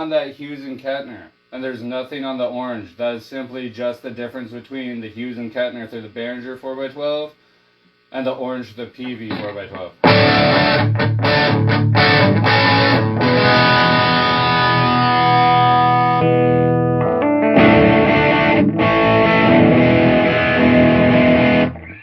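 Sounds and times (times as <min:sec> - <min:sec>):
distorted electric guitar chords: 0:09.3 - 0:22.0.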